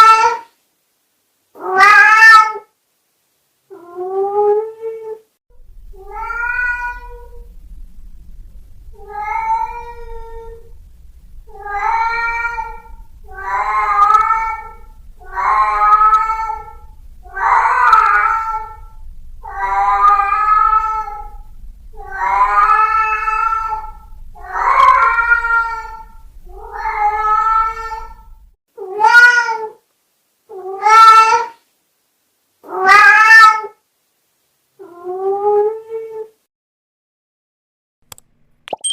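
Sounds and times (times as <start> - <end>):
cat meowing: 1.6 - 2.6, 5.8 - 7.6, 8.9 - 10.8, 11.5 - 29.8, 30.5 - 31.6, 32.7 - 33.8
low steady hum: 5.5 - 28.6.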